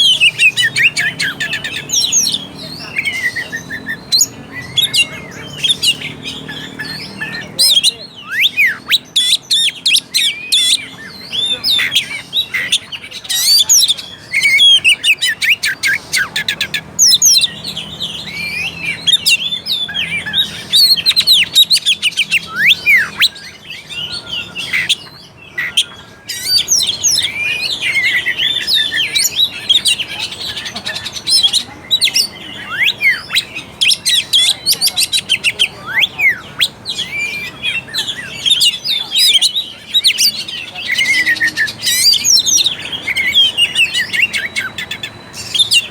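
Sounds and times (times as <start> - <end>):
magpie-robin singing: 0.0 - 45.9.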